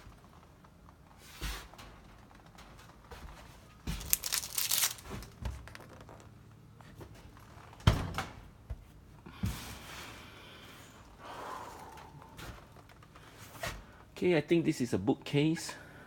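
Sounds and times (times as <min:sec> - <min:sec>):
household items rustling: 0:03.3 - 0:06.1.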